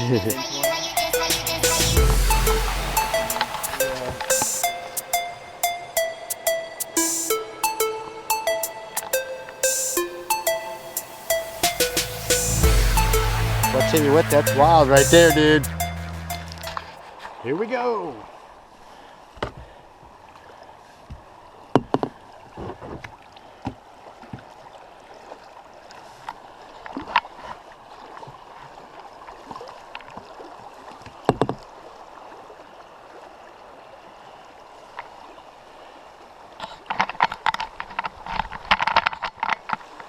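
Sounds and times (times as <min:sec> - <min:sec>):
rushing river water: 0:00.0 - 0:40.0.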